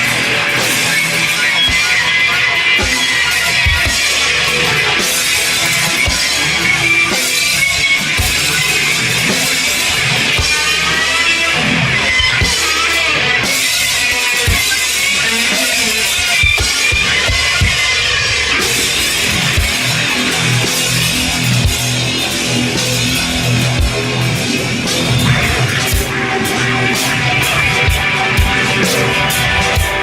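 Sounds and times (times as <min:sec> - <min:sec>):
distorted electric guitar: 0:00.0 - 0:30.0
drum kit: 0:00.0 - 0:30.0.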